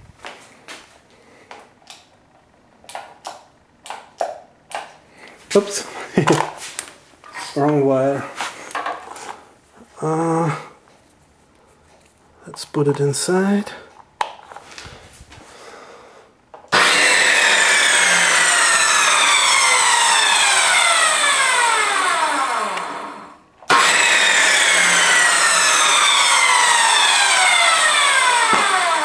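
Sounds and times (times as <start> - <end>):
table saw running and slowing: 16.7 - 29.0.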